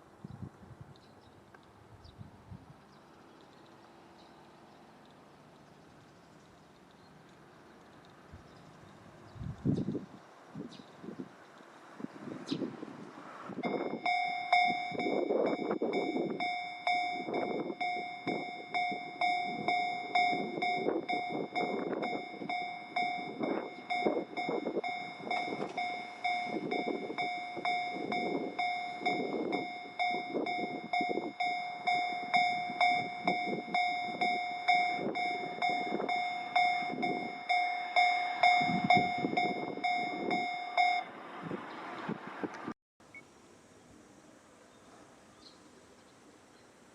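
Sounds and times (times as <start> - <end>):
vehicle rumbling: 0.0 - 46.9
level crossing bell clanging: 13.6 - 41.2.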